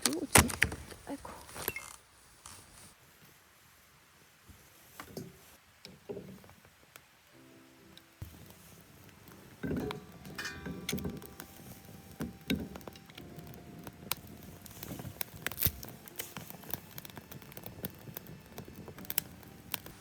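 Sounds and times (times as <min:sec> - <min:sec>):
campfire crackling and popping: 0:04.8 - 0:20.0.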